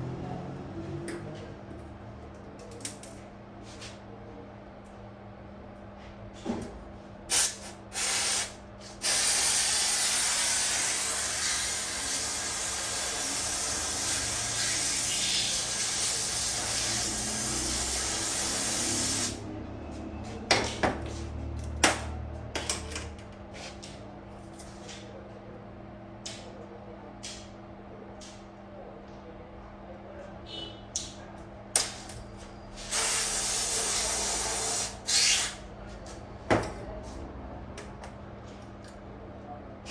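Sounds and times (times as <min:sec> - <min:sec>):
pressurised spray hissing: 0:07.3 - 0:19.4.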